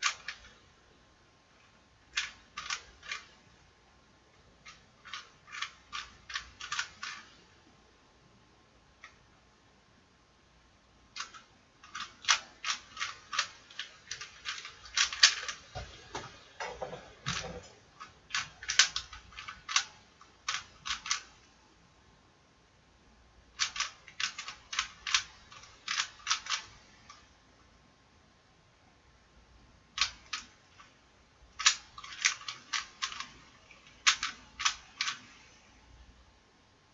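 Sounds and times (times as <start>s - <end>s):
puzzle cube clacking: 0.0s - 0.6s, 1.6s - 3.6s, 4.6s - 7.5s, 11.1s - 21.4s, 23.6s - 27.3s, 30.0s - 35.6s.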